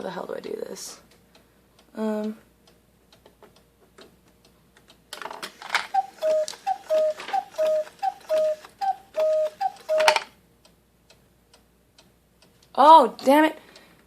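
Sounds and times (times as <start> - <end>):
faint clock ticking: 0.0 - 5.1, 5.9 - 14.0
cuckoo clock calling: 5.5 - 10.4.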